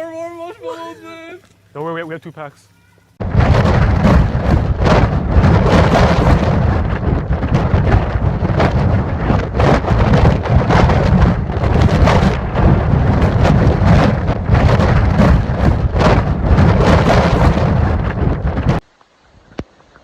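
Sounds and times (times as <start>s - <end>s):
heavy rain drumming: 3.2s - 18.8s
loud low rumble: 3.2s - 18.8s.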